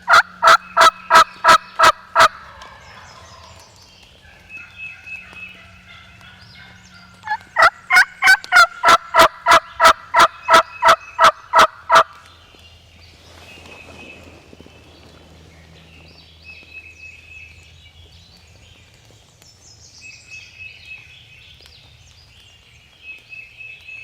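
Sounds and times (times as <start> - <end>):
turkey yelping: 0.0 - 3.0, 7.0 - 12.2
faint songbirds singing: 9.1 - 24.0.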